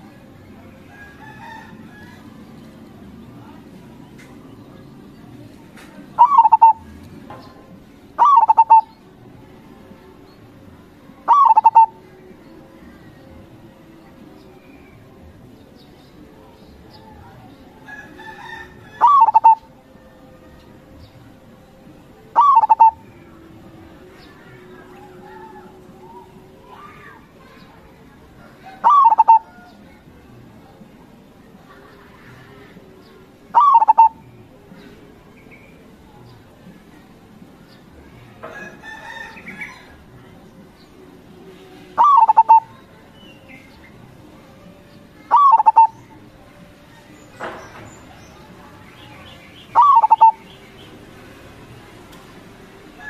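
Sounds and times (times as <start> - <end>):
dove cooing: 6.1 - 6.9, 8.2 - 9.0, 11.2 - 12.0, 17.8 - 19.8, 22.0 - 23.2, 28.4 - 29.8, 33.5 - 34.2, 41.8 - 42.9, 45.2 - 46.1, 49.7 - 50.5
faint drawn-out bird call: 6.2 - 6.9, 8.2 - 9.0, 11.2 - 12.0, 17.9 - 19.7, 22.3 - 23.1, 28.4 - 29.8, 33.5 - 35.7, 41.8 - 43.7, 44.9 - 46.2, 49.0 - 50.6.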